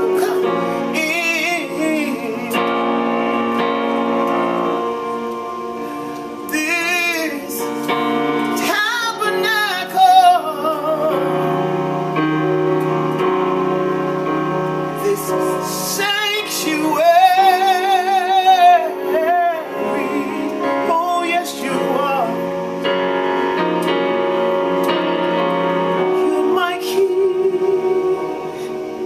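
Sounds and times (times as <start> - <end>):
woman singing with vibrato: 0.0 - 3.4, 8.5 - 11.7, 15.0 - 22.8, 26.1 - 29.0
piano chords: 0.0 - 29.0.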